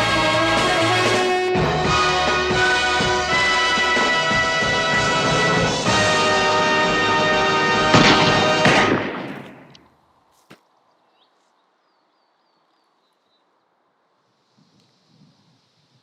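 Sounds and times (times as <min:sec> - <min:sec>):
orchestral music with brass: 0:00.0 - 0:09.2.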